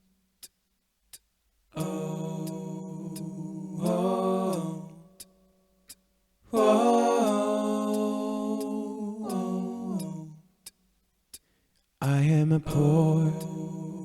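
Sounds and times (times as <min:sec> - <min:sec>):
wordless a cappella singing: 0:01.7 - 0:05.4, 0:06.5 - 0:10.7, 0:12.0 - 0:14.0.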